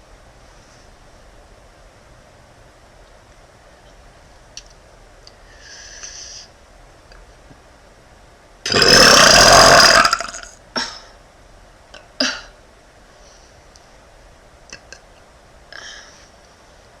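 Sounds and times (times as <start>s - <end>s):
woman burping loudly: 8.7s - 10.9s.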